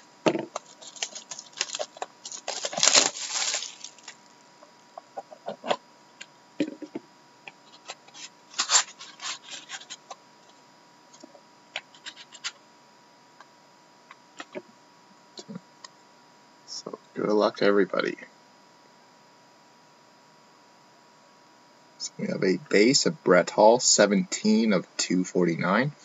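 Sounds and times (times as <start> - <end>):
packaging crackling and tearing: 0.6 - 4.3, 8.5 - 9.9.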